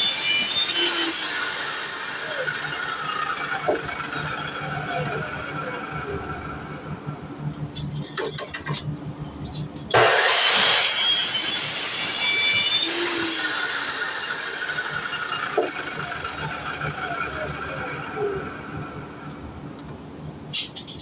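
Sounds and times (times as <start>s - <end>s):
miter saw running: 0.0s - 7.2s, 9.9s - 19.5s.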